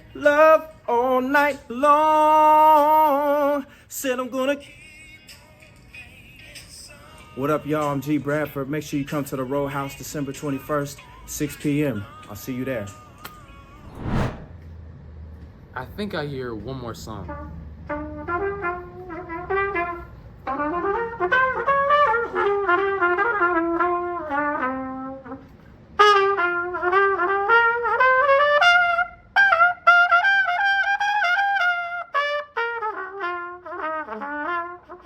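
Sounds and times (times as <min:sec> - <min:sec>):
solo trumpet melody: 0:18.1 - 0:25.4, 0:26.0 - 0:35.0.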